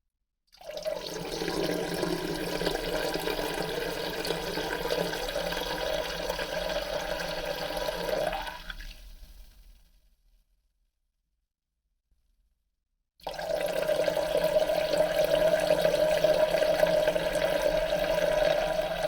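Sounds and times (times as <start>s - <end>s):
urine splashing into toilet: 0.6s - 9.0s, 13.2s - 19.0s.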